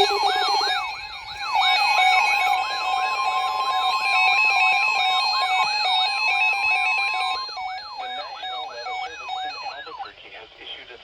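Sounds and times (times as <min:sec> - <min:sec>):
steady alert tone: 0:00.0 - 0:00.8
sweeping siren-like alarm: 0:00.0 - 0:09.9.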